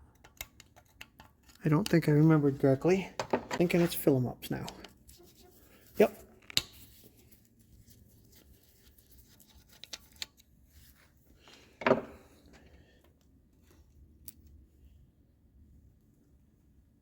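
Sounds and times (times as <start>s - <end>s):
tools and parts clicking: 0.0s - 2.0s.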